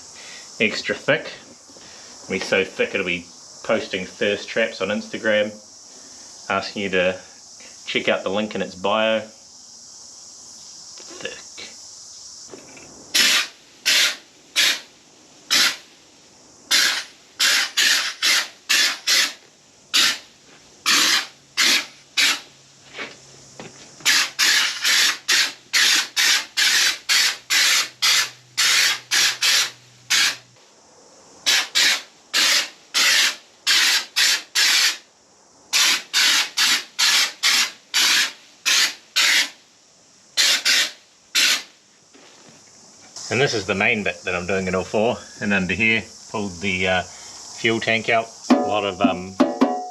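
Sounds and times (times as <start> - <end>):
aerosol spray can hissing: 13.2 - 14.9, 15.5 - 15.8, 16.7 - 19.4, 20.9 - 22.4, 24.1 - 30.4, 31.5 - 35.0, 35.7 - 39.6, 40.4 - 41.7.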